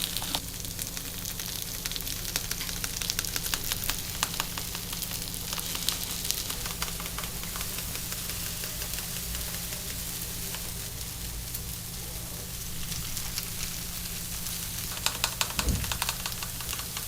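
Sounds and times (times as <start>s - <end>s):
batter sizzling in moulds: 0.0s - 17.0s
sharp clicks and taps: 14.9s - 17.0s.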